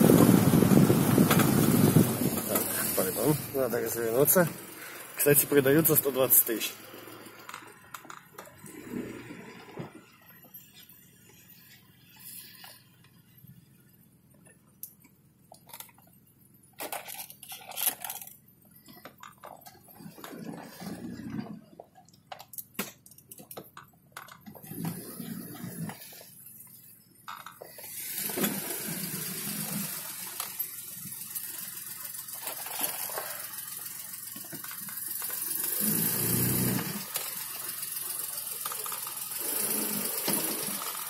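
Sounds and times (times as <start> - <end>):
dull low thumps over bumps: 0.0 - 2.8.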